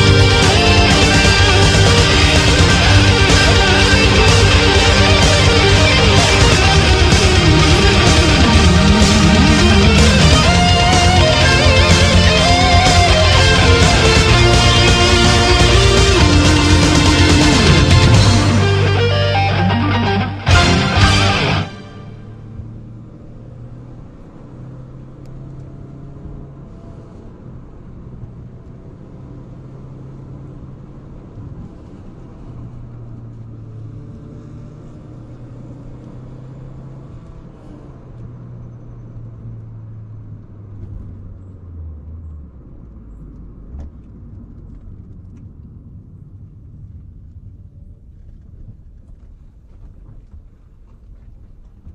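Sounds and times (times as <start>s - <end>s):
car engine running: 0.0s - 24.6s.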